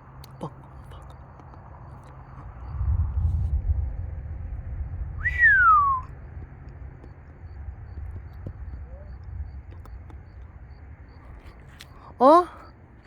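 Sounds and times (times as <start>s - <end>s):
low steady rumble: 0.0s - 13.0s
whistled note sliding down: 5.2s - 6.0s.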